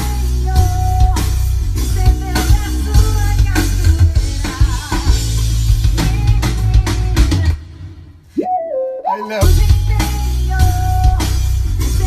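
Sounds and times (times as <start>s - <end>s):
drum kit: 0.0s - 8.4s, 9.3s - 12.0s
heavy bass line: 9.4s - 12.0s.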